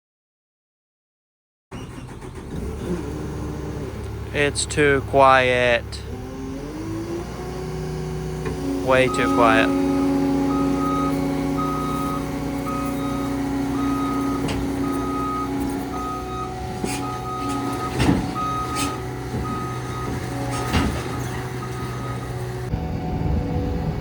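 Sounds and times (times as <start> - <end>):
diesel engine running: 1.7 - 24.0
backup alarm beeping: 8.5 - 23.6.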